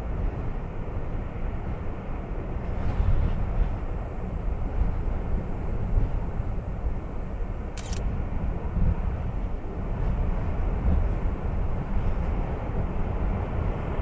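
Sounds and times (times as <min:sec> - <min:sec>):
short hiss: 0:07.8 - 0:08.0.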